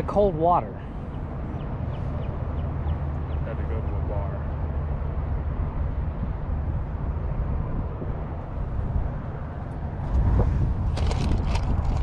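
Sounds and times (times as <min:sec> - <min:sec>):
wind buffeting microphone: 0:00.0 - 0:12.0
crackling rustles: 0:10.0 - 0:12.0.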